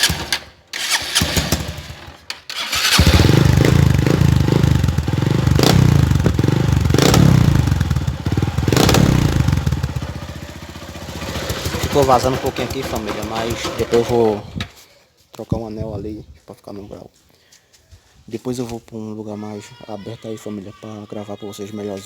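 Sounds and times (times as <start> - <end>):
motorcycle engine starting up: 0.0 - 14.6
deep pulsing exhaust note: 3.2 - 10.3.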